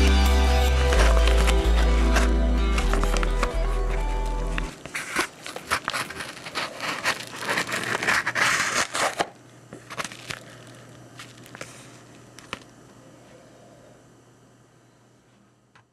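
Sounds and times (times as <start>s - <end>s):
rustling and crinkling: 0.9s - 4.0s, 4.6s - 12.8s.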